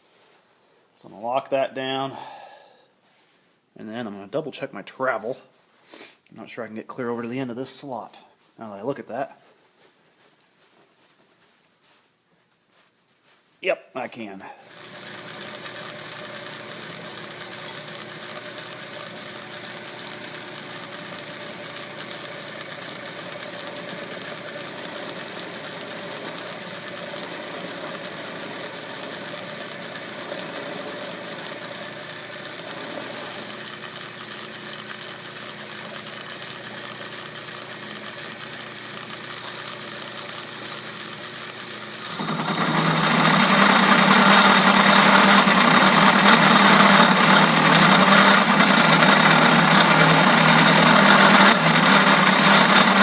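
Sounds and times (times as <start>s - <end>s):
lathe bit cutting iron: 14.6s - 53.0s
metal lathe motor hum: 14.7s - 53.0s.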